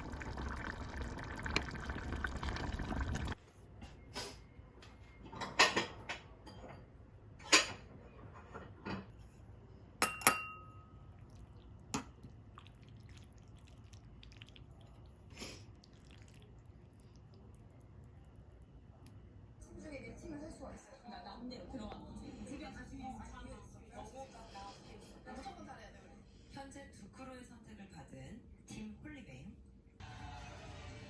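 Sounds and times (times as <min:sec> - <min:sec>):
dishes and utensils clattering: 0:05.2 - 0:09.3.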